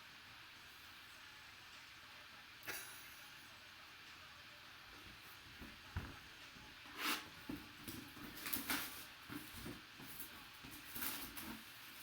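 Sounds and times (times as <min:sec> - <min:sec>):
packaging rustling and scraping: 0:06.9 - 0:12.0.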